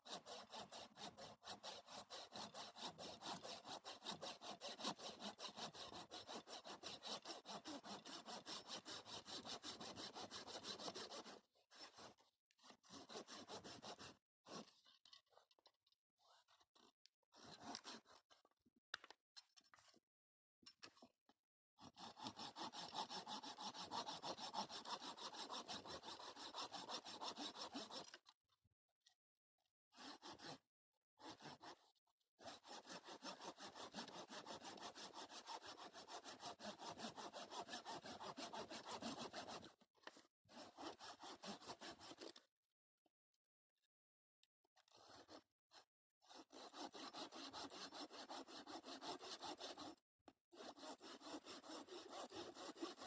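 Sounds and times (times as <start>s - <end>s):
hand saw cutting wood: 0.0s - 15.3s, 16.2s - 18.5s, 21.8s - 28.4s, 29.9s - 30.6s, 31.2s - 42.5s, 44.8s - 50.0s, 50.6s - 53.0s.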